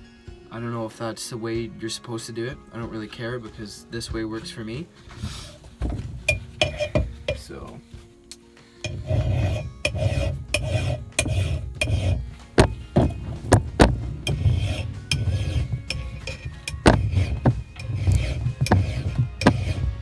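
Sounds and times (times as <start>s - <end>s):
file rasping on axe blade: 5.0s - 7.9s, 8.8s - 20.0s.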